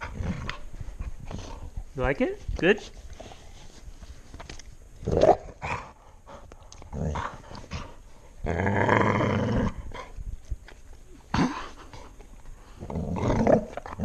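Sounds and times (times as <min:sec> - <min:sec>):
dog growling: 0:05.0 - 0:10.2, 0:11.3 - 0:14.0.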